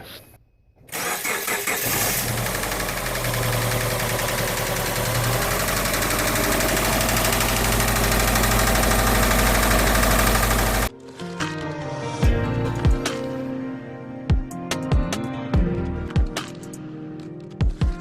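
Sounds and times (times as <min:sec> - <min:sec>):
car engine cranking and knocking: 0:01.0 - 0:10.9.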